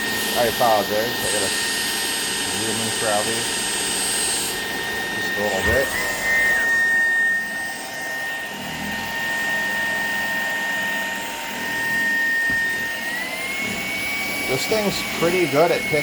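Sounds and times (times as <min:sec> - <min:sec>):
vacuum cleaner motor whine: 0:00.0 - 0:16.0.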